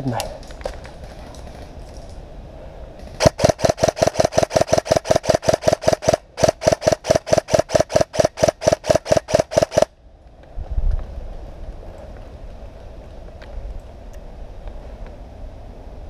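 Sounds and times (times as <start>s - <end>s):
airsoft gun rapid firing: 3.2s - 9.9s.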